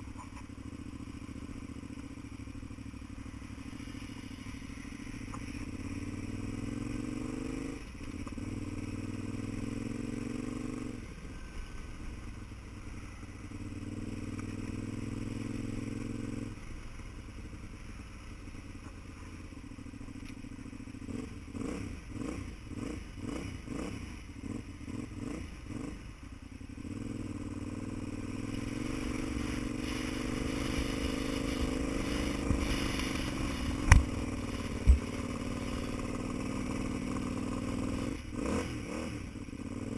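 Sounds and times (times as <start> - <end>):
vehicle engine revving: 26.8 - 39.9.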